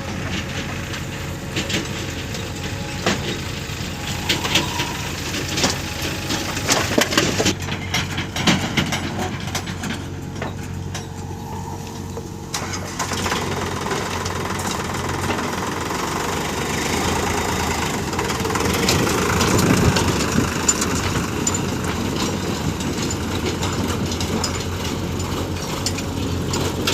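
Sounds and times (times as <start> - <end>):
metal clanks: 0.0 - 13.5
heavy machinery diesel engine: 0.0 - 26.9.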